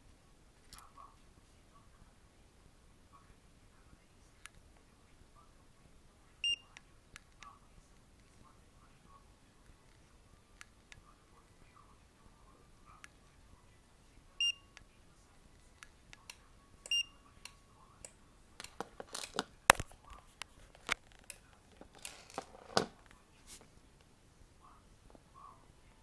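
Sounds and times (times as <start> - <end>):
clicks: 15.8 - 23.2
short electronic beeps: 16.9 - 17.2
rustling handling noise: 18.6 - 23.9.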